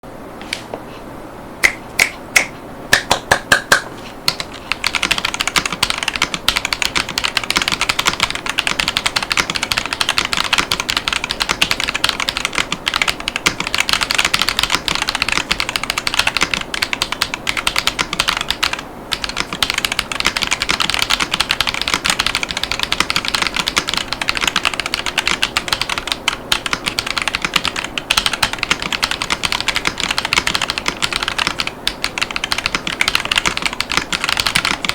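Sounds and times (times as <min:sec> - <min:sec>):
mechanical keyboard typing: 0:04.3 - 0:34.9.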